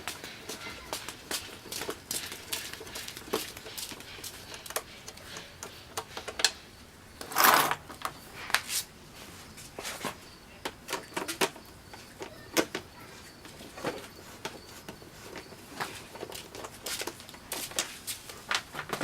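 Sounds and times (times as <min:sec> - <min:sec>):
loud scraping on plastic: 0:07.2 - 0:08.6.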